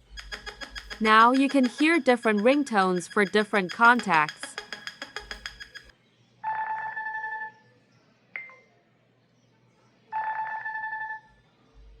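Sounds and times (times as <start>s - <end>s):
buzzy ringtone tone: 5.6s - 7.7s, 10.1s - 11.4s.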